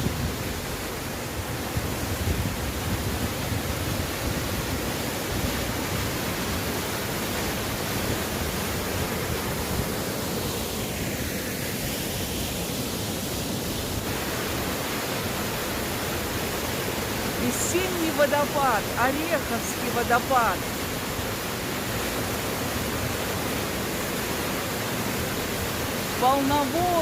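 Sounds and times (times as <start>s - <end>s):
waterfall rushing: 0.0s - 27.0s.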